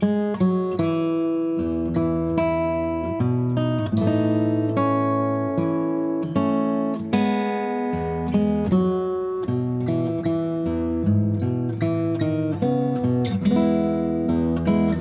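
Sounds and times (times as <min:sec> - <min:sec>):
acoustic guitar music: 0:00.0 - 0:15.0.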